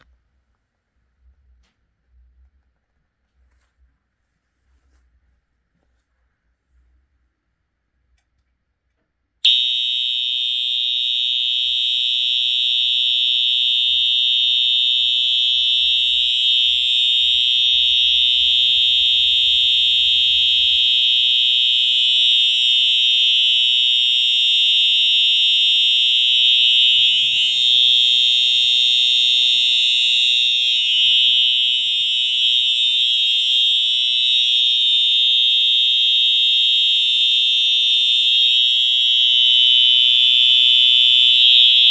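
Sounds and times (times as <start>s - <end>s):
fire alarm horn steady tone: 9.4s - 41.9s.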